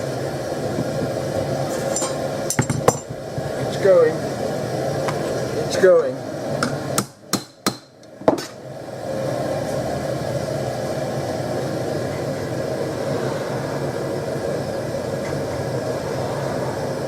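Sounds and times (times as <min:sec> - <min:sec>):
gas forge burner rushing: 0:00.0 - 0:17.0.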